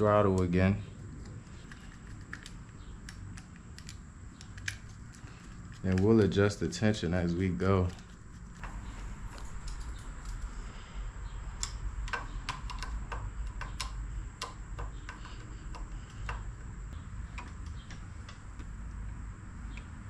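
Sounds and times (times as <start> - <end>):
low steady rumble: 0.0 - 20.0
light clicks of small parts: 1.2 - 6.4.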